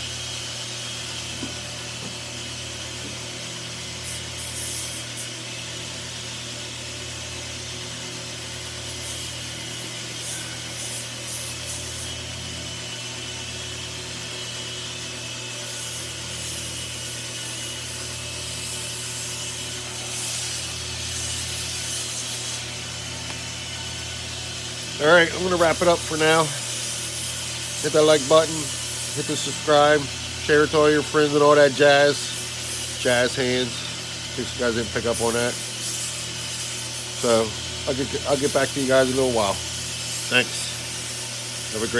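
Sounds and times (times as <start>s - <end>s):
sandpaper rasping on knife blade: 4.0s - 5.6s, 8.6s - 12.3s, 15.6s - 23.3s, 25.0s - 41.9s.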